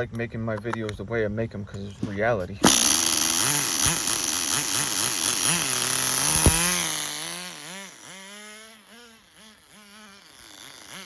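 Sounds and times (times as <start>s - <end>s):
sharp click: 2.6s - 4.2s, 5.2s - 7.2s
rc car engine surging: 2.6s - 11.0s.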